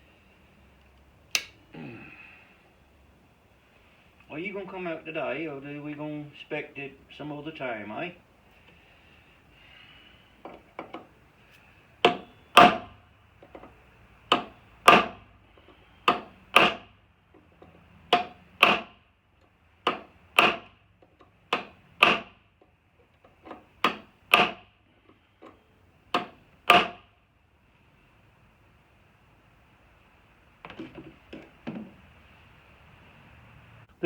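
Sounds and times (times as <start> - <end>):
hammer striking metal punch: 26.2 - 27.0.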